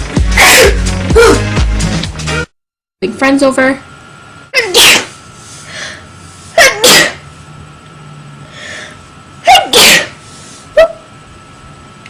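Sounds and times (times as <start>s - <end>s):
person sneezing: 0.3s - 1.4s, 4.6s - 5.2s, 6.5s - 7.2s, 9.5s - 10.2s.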